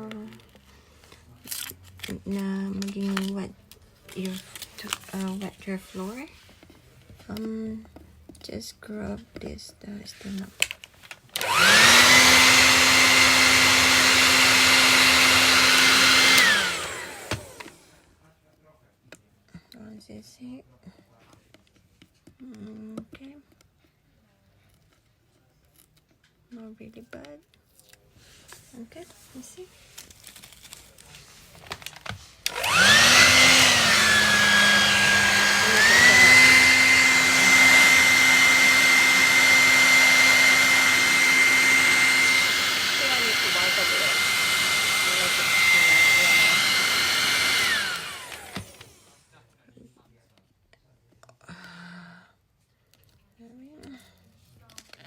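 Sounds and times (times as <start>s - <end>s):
hair dryer motor whine: 11.3s - 18.0s, 32.4s - 49.2s.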